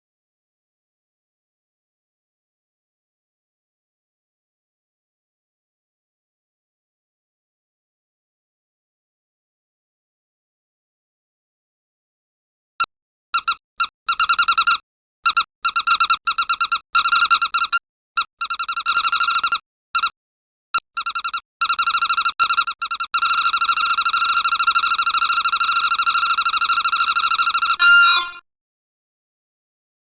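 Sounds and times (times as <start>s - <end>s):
squeaky rubber dog toy squeaks: 13.4s - 17.8s, 18.4s - 20.1s, 21.0s - 28.4s.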